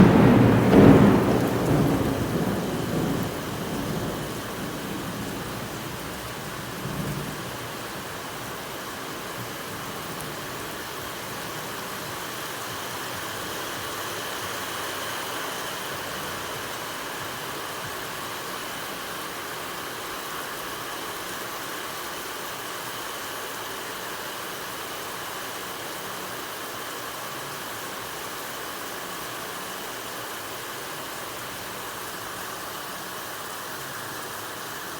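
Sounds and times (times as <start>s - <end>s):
thunder rumble: 0.0s - 14.5s
rain falling: 0.0s - 34.9s.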